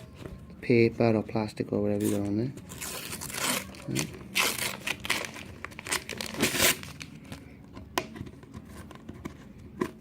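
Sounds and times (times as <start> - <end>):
label crinkling and tearing: 1.9 - 7.4.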